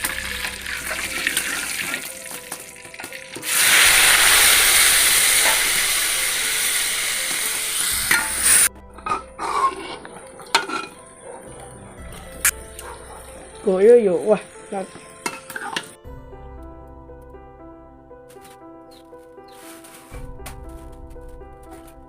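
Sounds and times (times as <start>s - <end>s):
meat sizzling in hot oil: 0.0s - 8.7s
utensil clanking on pan: 10.5s - 11.0s.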